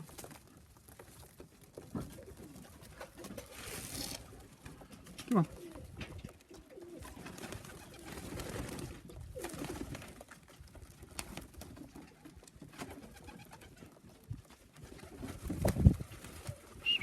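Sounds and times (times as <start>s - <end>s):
pigeons cooing: 5.2s - 8.4s, 16.8s - 17.0s.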